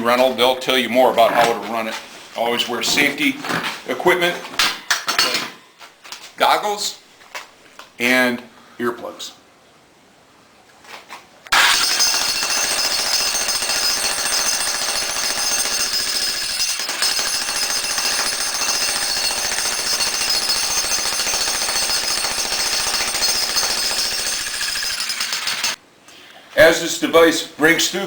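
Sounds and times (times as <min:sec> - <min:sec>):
jackhammer chiselling concrete: 0:11.6 - 0:25.8.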